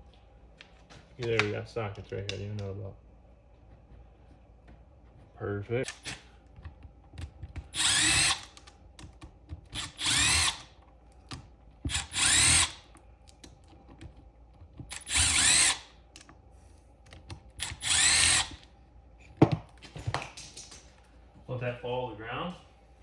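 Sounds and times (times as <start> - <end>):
power drill spinning: 5.8 - 6.6, 7.5 - 8.8, 9.6 - 13.0, 14.8 - 16.1, 17.4 - 18.7.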